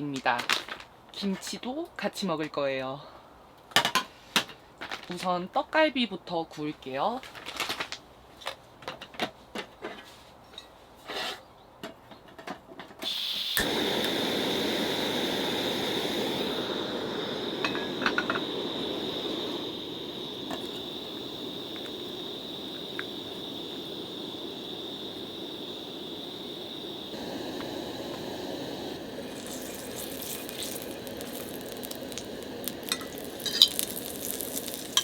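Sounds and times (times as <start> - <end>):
beef patties sizzling: 13.0 - 35.0.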